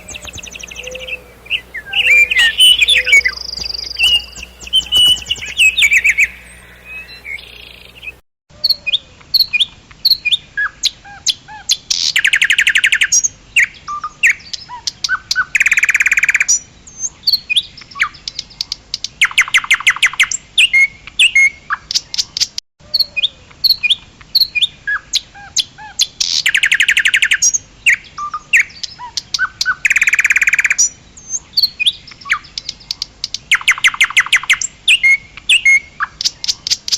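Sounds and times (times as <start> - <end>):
nightingale singing: 0.0 - 8.2.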